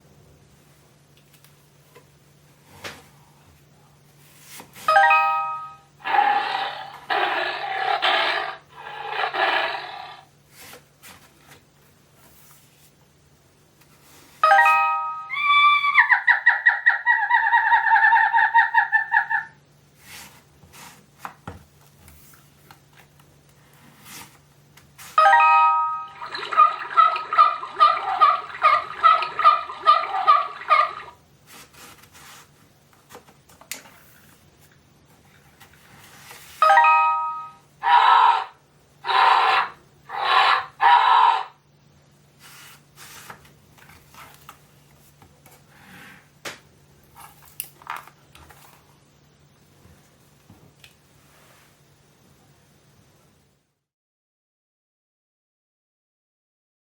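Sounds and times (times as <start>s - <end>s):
rapidly pulsing animal call: 37.8s - 41.6s.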